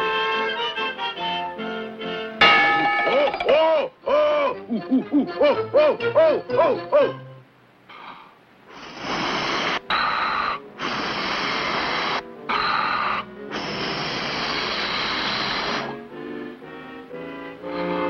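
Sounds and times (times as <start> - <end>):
soft orchestral music: 0.0 - 2.4, 4.0 - 7.5, 16.0 - 18.0.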